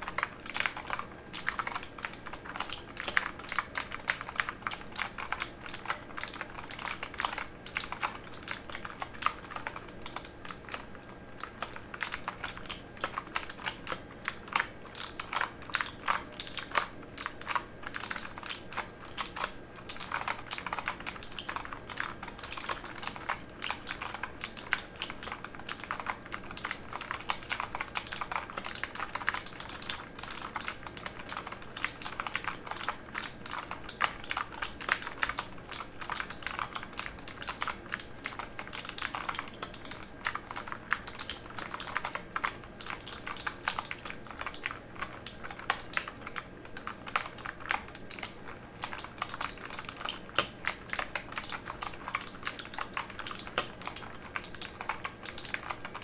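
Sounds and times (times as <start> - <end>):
mechanical keyboard typing: 0.0 - 56.0.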